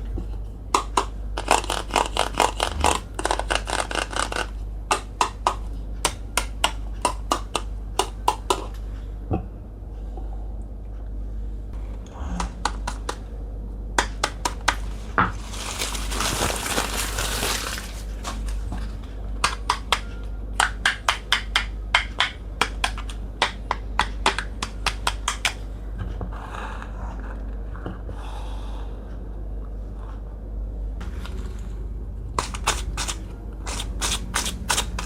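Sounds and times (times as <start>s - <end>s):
steady low hum: 0.0s - 35.0s
rustling: 14.9s - 18.5s.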